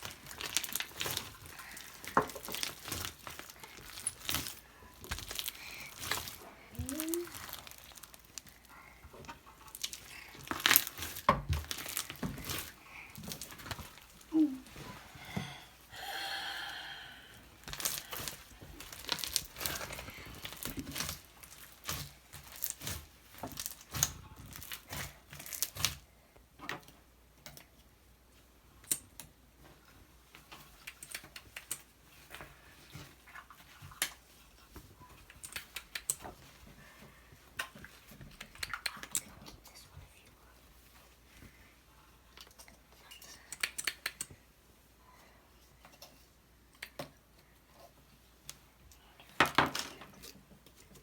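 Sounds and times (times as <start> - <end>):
slime squeezed with wet crackles: 0.0 - 8.9, 9.6 - 14.4, 17.6 - 26.0.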